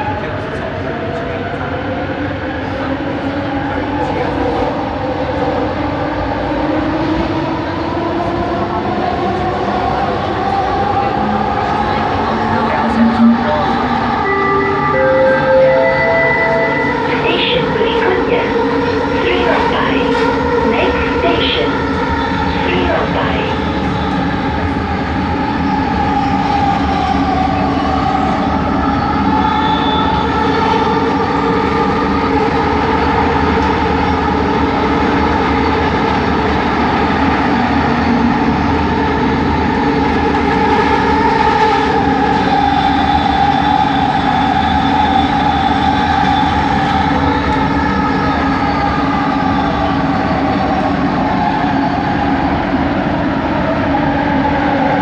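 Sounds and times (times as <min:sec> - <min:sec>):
train motor whining hum: 0:11.0 - 0:25.5.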